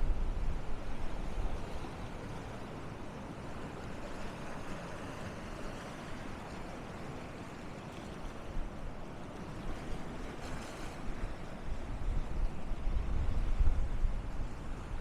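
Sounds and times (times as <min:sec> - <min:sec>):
wind rumbling on microphone: 0:00.0 - 0:02.5, 0:10.5 - 0:15.0.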